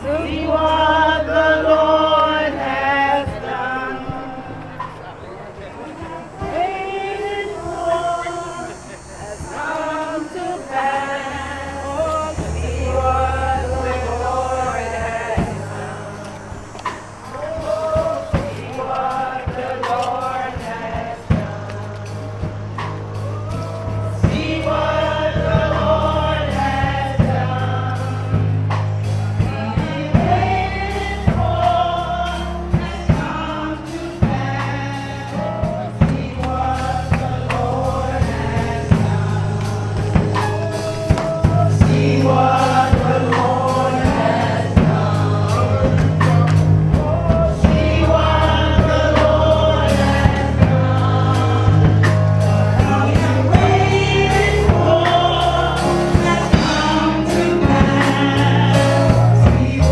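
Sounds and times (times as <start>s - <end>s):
bass: 0.0s - 59.9s
gospel choir singing: 0.0s - 59.9s
drum kit beat: 5.6s - 59.9s.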